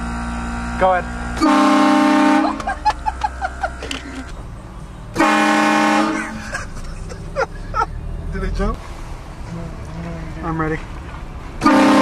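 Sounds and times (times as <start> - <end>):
train horn chord blasts: 1.4 - 2.6, 5.2 - 6.2, 11.6 - 12.0.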